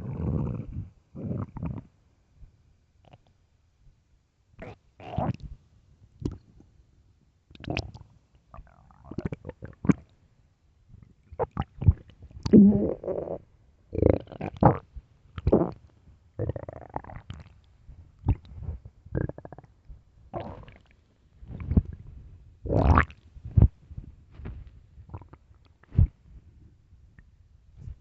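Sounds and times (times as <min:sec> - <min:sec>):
stomach growling: 0:00.0 - 0:01.9, 0:04.6 - 0:05.5, 0:07.6 - 0:08.0, 0:08.6 - 0:10.1, 0:11.2 - 0:15.8, 0:16.4 - 0:17.6, 0:18.2 - 0:22.1, 0:22.7 - 0:23.8, 0:24.4 - 0:26.2.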